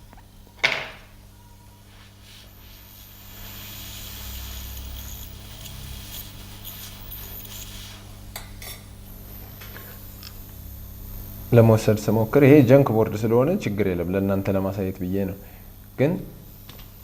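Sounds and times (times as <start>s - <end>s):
low electrical hum: 0.0s - 17.0s
hot air gun hissing: 1.9s - 8.6s.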